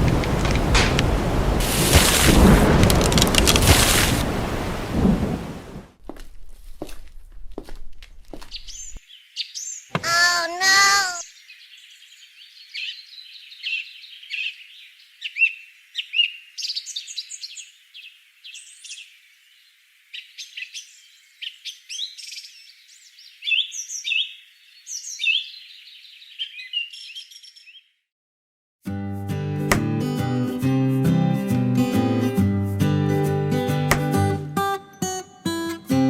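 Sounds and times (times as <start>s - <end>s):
small birds chirping: 8.3s - 28.0s.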